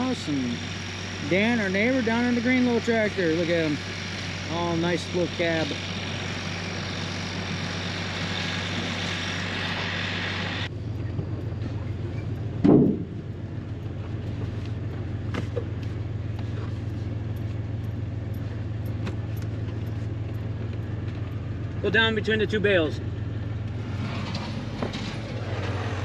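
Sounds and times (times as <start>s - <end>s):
vehicle engine running: 0.0s - 26.0s
loud thump: 12.6s - 13.2s.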